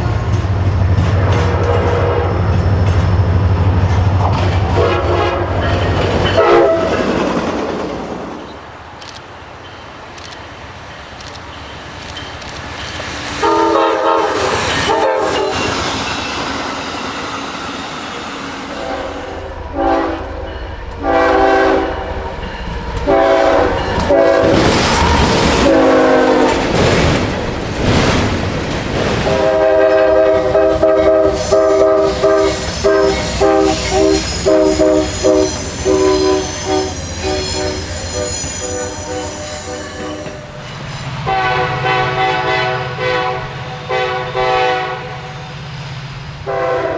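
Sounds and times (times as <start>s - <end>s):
train horn blasts: 1.2s - 2.6s, 4.6s - 7.0s, 13.4s - 16.8s, 18.6s - 22.3s, 23.0s - 26.8s, 29.3s - 40.6s, 41.2s - 45.5s, 46.4s - 46.9s.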